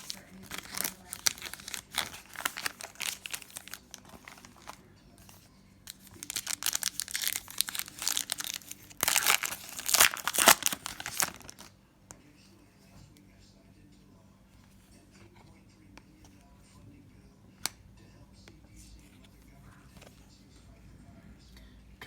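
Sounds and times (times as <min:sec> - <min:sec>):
card packs crinkling and rustling: 0:00.0 - 0:11.7.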